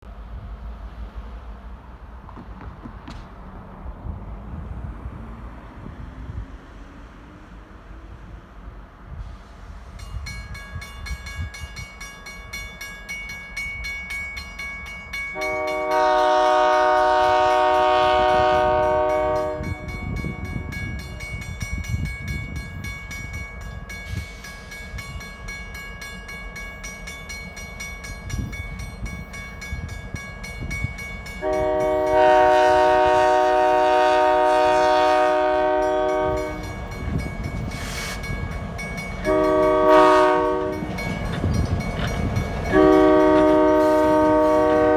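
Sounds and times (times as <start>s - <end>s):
diesel locomotives running: 0.1s - 44.9s
locomotive air horn blasts: 15.4s - 21.1s, 31.4s - 36.8s, 39.3s - 41.0s, 42.7s - 44.9s.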